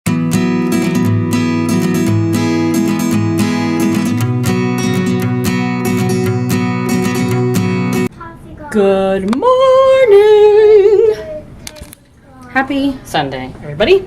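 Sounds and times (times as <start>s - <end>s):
strummed acoustic guitar: 0.1s - 8.1s
high voice singing: 8.8s - 11.6s.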